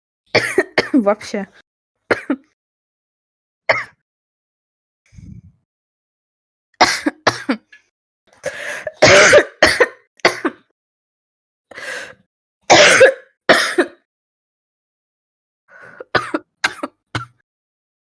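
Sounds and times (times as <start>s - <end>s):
woman coughing harshly: 0.3s - 1.1s, 2.1s - 2.5s, 3.7s - 4.0s, 6.8s - 7.7s, 8.7s - 10.7s, 12.7s - 14.1s, 16.0s - 17.4s
woman clearing throat: 12.7s - 13.9s, 16.2s - 17.4s.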